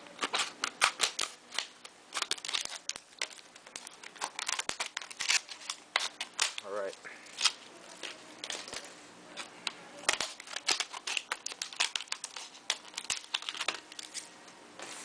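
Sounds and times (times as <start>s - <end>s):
plastic packaging crinkling: 0.0s - 15.0s.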